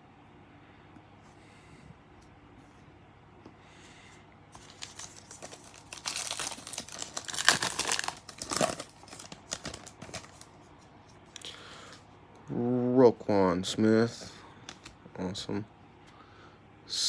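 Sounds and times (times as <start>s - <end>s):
wrapper tearing and crinkling: 4.6s - 10.5s.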